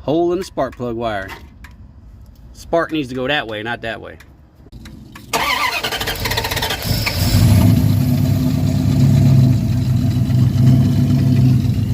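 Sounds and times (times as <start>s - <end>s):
truck engine cranking and starting: 4.8s - 11.9s.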